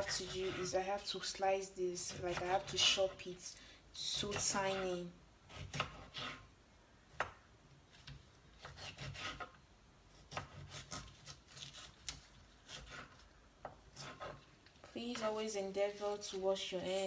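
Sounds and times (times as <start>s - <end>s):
knife chopping on cutting board: 2.1s - 3.1s, 5.5s - 6.4s, 8.0s - 9.6s, 10.2s - 14.4s.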